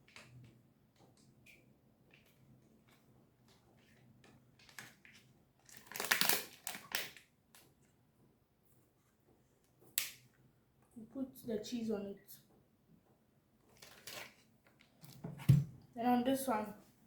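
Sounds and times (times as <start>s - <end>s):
cheese crackling and rustling: 2.0s - 7.8s, 13.6s - 15.2s.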